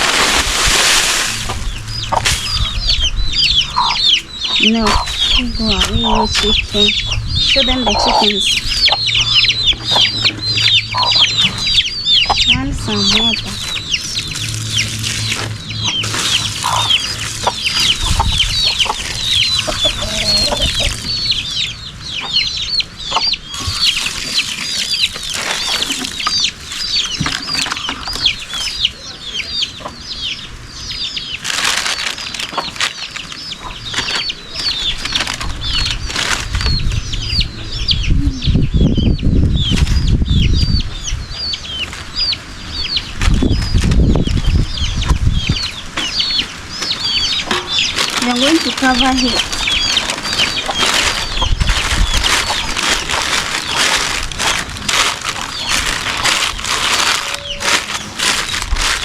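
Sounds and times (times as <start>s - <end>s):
chickens clucking: 0.0s - 59.0s
chicks peeping: 0.0s - 59.0s
low rumbling noise: 0.0s - 59.0s.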